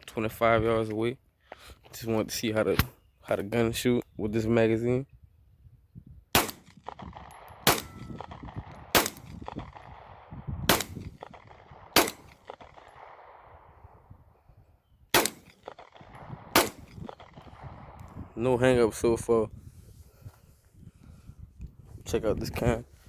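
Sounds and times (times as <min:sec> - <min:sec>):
pistol shots with echo: 0:06.4 - 0:14.1, 0:15.1 - 0:18.2.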